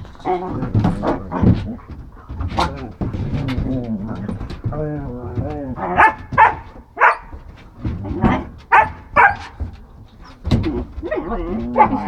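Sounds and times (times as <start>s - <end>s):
soft pitched dog sounds: 0.0s - 12.0s
dog barking: 5.8s - 7.4s, 8.3s - 9.7s, 11.7s - 12.0s.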